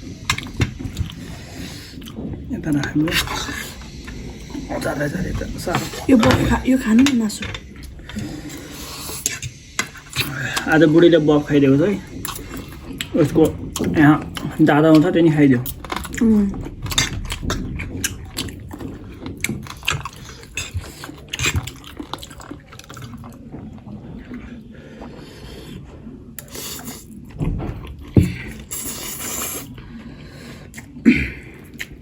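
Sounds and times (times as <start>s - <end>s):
chewing food: 0.0s - 32.0s.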